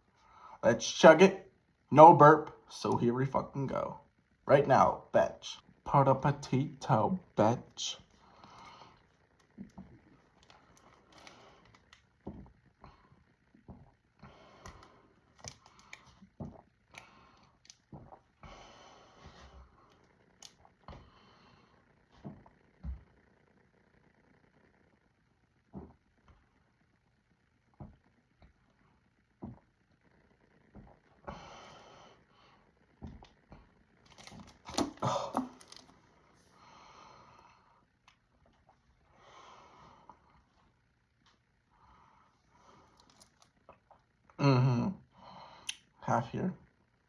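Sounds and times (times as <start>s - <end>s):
soft hissy breathing: 8.0s - 9.4s, 10.1s - 11.9s, 12.7s - 22.4s, 31.2s - 33.8s, 35.0s - 38.0s, 38.7s - 43.6s
person gulping soda: 33.0s - 36.0s
plastic bottle crackling: 34.0s - 36.0s, 43.0s - 43.6s.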